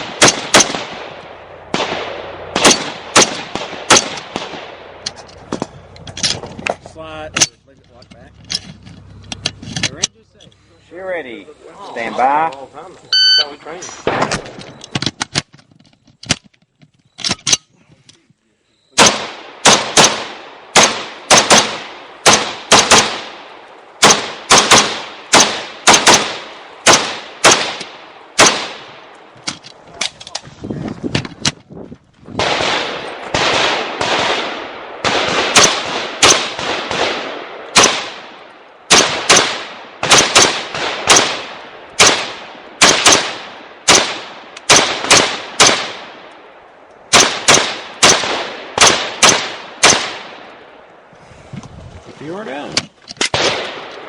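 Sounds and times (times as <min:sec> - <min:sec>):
rifle shots with echo: 0:00.0 - 0:05.1, 0:19.0 - 0:29.3, 0:32.4 - 0:50.8, 0:53.2 - 0:54.0.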